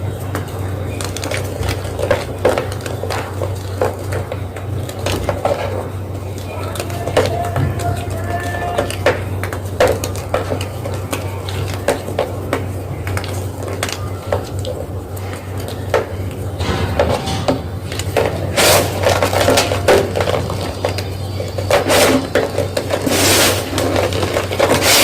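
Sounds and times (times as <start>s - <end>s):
steady low hum: 9.0s - 24.8s
chalk being crushed: 18.3s - 25.0s.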